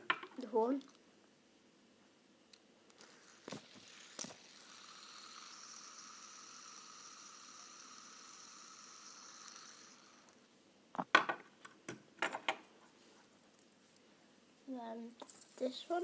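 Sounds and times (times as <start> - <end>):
fidget spinner whirring: 3.0 - 10.5.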